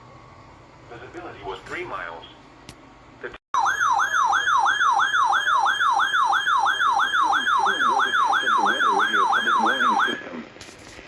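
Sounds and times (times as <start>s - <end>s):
electronic siren yelping: 3.6s - 10.2s.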